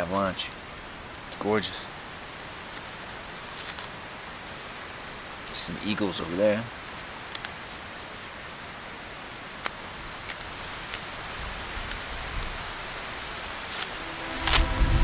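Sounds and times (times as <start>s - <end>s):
wind hiss: 0.0s - 15.0s
wind buffeting microphone: 14.4s - 15.0s.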